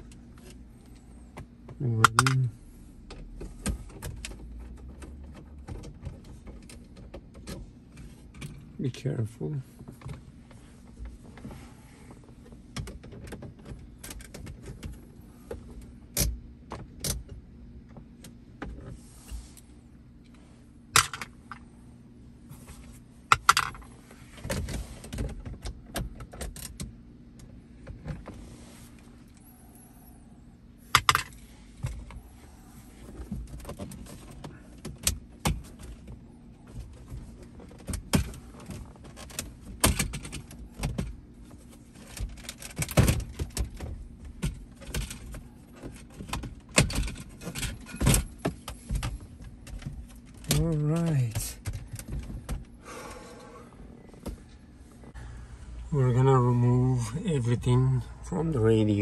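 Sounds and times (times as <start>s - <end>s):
hands handling plastic and metal parts: 2.0s - 2.5s, 22.7s - 24.7s.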